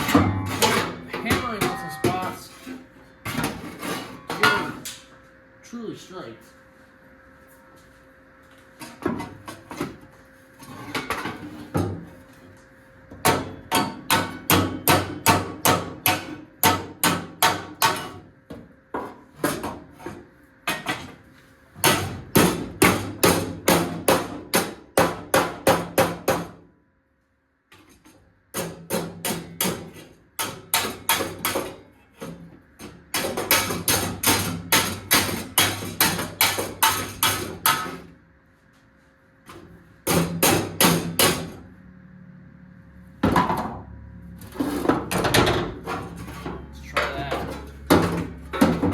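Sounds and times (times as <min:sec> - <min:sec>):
hammer striking sheet steel: 0:00.0 - 0:02.4, 0:33.2 - 0:38.1, 0:40.0 - 0:41.6.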